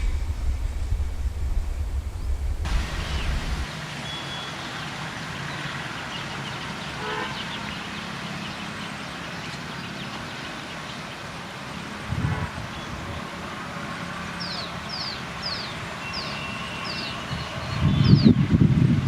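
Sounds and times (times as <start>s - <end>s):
electric train humming: 0.0s - 3.7s
low thump: 0.0s - 3.7s
train horn toot: 7.0s - 7.6s.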